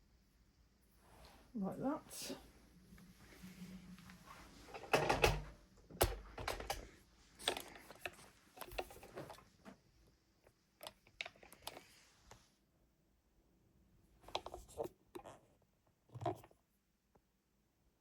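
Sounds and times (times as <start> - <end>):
thread handling clicks and rustles: 4.7 - 9.8, 10.5 - 12.4.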